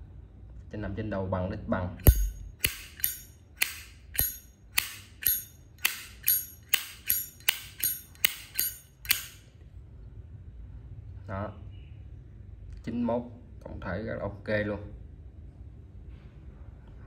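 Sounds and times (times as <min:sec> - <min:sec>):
lighter lid metallic clink: 0:02.0 - 0:09.4.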